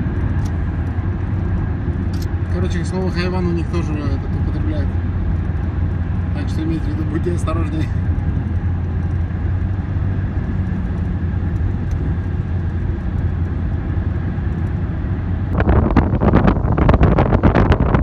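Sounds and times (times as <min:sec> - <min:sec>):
car cruising rumble from inside: 0:00.0 - 0:18.0
wind buffeting on microphone: 0:07.8 - 0:18.0.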